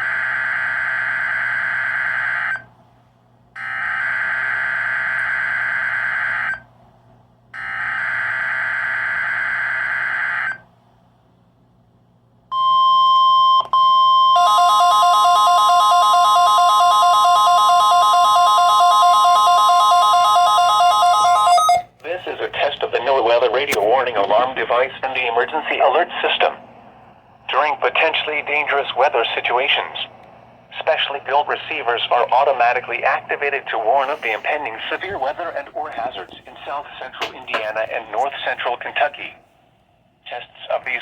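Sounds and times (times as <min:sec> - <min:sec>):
steady warning alarm tone: 0:07.6 - 0:10.6, 0:12.5 - 0:22.0
warbling electronic alarm tone: 0:12.6 - 0:21.9.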